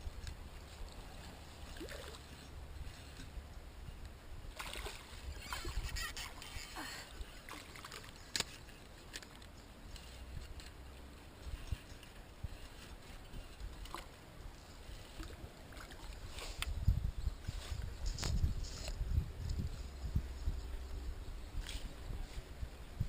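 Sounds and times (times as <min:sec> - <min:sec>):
river water running: 0:00.0 - 0:18.4.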